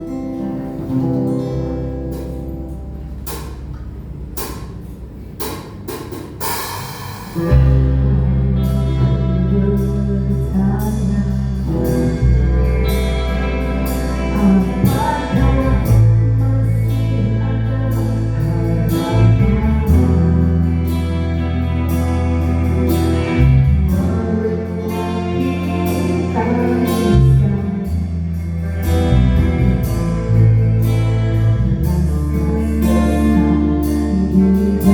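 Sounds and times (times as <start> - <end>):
guitar: 0.0 - 34.9
heavy bass: 0.0 - 34.9
live band playing: 0.5 - 3.7, 5.4 - 34.9
drum hits: 3.3 - 3.8, 4.4 - 7.7
cymbal wash: 4.4 - 17.2
person singing: 7.4 - 34.9.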